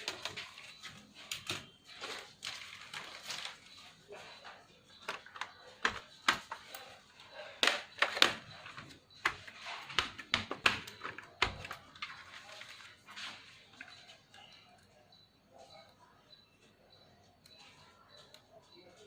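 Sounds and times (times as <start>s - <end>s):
plastic and metal parts clicking: 4.9s - 12.8s.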